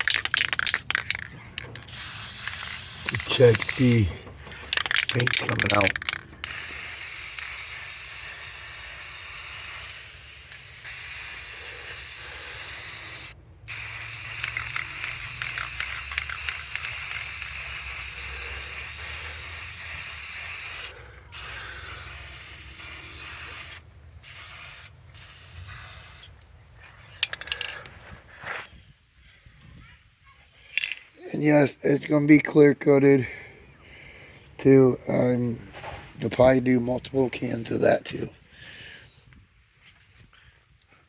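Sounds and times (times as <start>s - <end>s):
spray paint can hissing: 0.0s - 26.4s, 28.5s - 28.7s.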